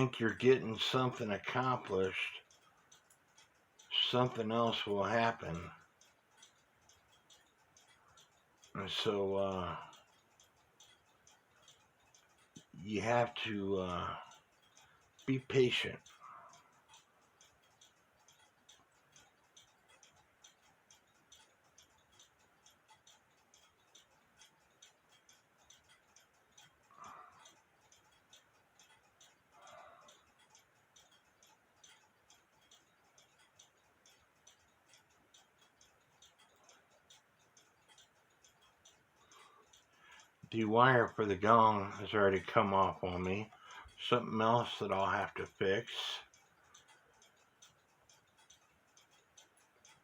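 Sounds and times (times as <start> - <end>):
mechanical clock ticking: 0.0 - 50.0.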